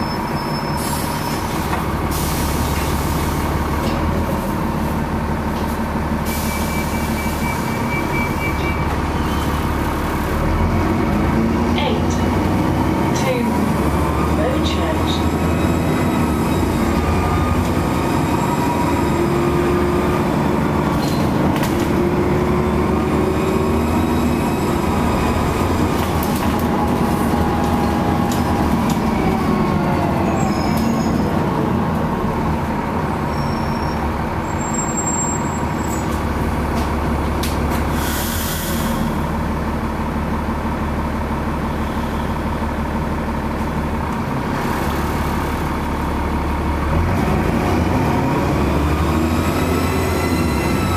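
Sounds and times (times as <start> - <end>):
bus engine and road noise: 0.0 - 50.9
air hissing: 37.9 - 39.1.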